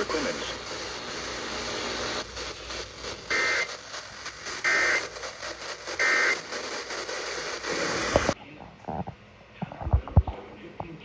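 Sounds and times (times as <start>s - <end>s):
two-tone digital data bursts: 0.0s - 3.8s, 4.4s - 8.4s
radio static hiss: 0.0s - 11.0s.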